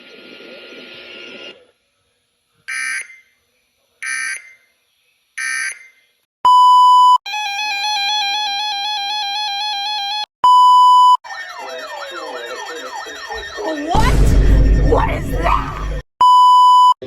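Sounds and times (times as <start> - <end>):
steady high beep: 10.5 - 17.0
warbling alert tone: 11.2 - 16.0.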